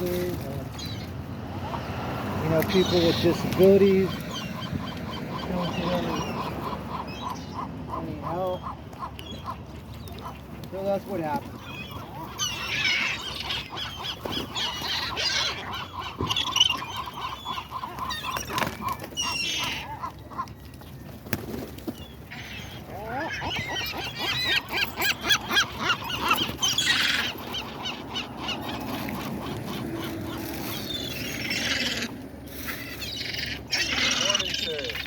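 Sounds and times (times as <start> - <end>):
seagulls squawking: 0.7 - 35.0.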